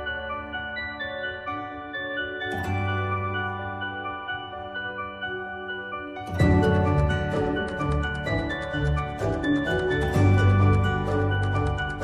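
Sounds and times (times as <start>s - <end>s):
background music with strong bass: 6.3s - 12.0s.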